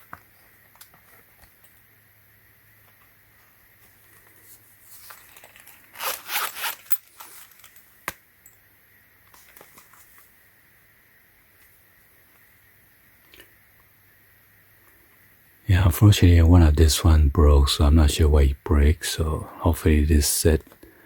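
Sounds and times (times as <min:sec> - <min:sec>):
packaging rustling and crinkling: 0:04.9 - 0:07.9.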